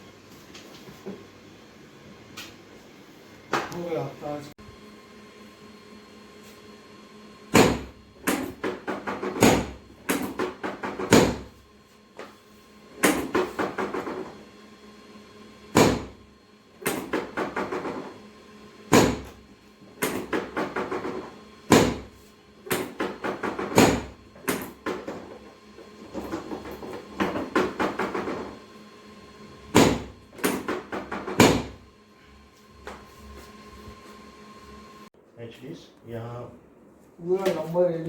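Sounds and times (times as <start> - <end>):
sharp knocks: 7.5 - 11.5, 15.8 - 16.2, 18.9 - 19.4, 20.0 - 22.1, 22.7 - 25.2, 29.7 - 31.8.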